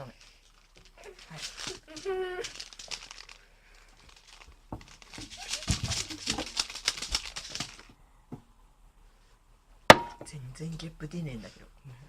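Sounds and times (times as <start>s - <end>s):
rapid crinkling and crackling: 0.0s - 8.0s.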